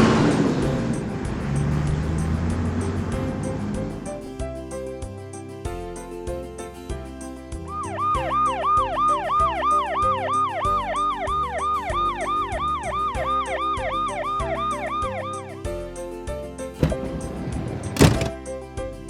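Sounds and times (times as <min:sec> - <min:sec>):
background music with steady beat: 0:00.0 - 0:19.0
fire truck siren yelp: 0:07.7 - 0:15.7.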